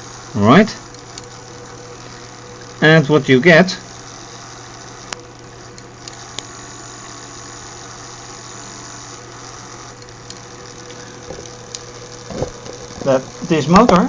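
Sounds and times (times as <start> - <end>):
small electric motors humming: 0.0 - 14.0.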